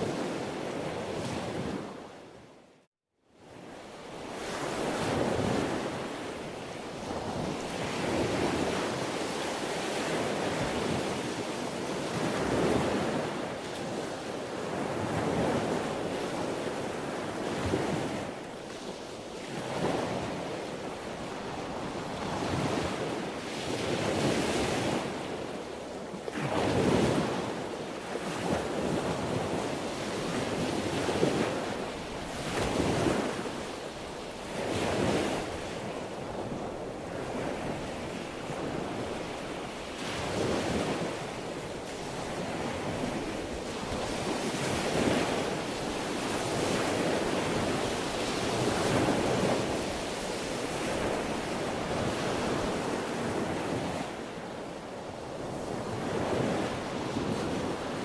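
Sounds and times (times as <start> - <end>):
wind noise on microphone: 0.0 - 2.7, 3.4 - 58.0
sea waves breaking: 26.3 - 58.0.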